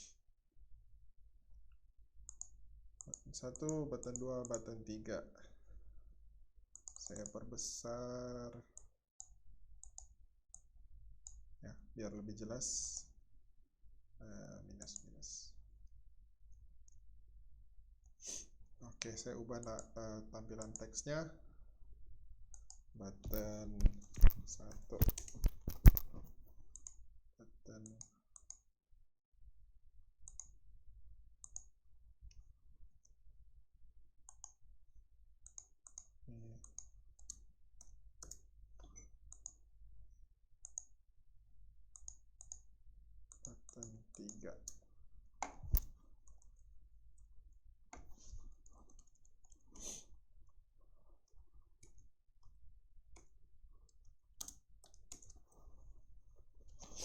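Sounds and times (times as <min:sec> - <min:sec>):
computer mouse clicks: 0:02.3 - 0:04.6, 0:06.8 - 0:07.7, 0:08.8 - 0:11.4, 0:19.6 - 0:20.0, 0:20.6 - 0:21.0, 0:22.5 - 0:27.0, 0:27.8 - 0:28.6, 0:30.2 - 0:30.6, 0:31.4 - 0:31.7, 0:34.3 - 0:34.6, 0:35.4 - 0:39.6, 0:40.6 - 0:40.9, 0:41.9 - 0:42.7, 0:43.3 - 0:44.8, 0:45.4 - 0:46.6, 0:53.9 - 0:55.6
mouse and keyboard clicks: 0:06.8 - 0:07.4, 0:22.5 - 0:27.0, 0:42.0 - 0:42.6, 0:45.4 - 0:46.6, 0:53.9 - 0:55.6
keyboard keys clicking: 0:22.6 - 0:27.0.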